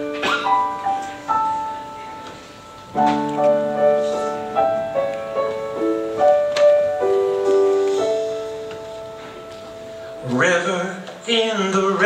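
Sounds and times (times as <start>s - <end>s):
solo piano playing: 0.0s - 12.0s.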